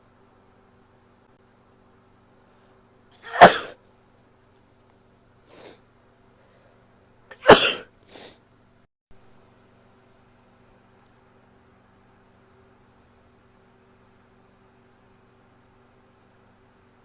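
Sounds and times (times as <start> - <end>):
woman sneezing: 3.2 - 3.8, 7.3 - 8.4.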